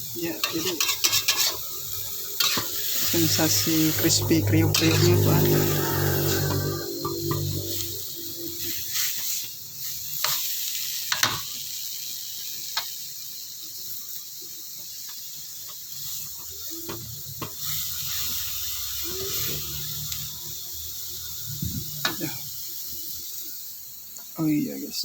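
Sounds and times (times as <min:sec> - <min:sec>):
vegetables sizzling in a pan: 0:00.0 - 0:25.0.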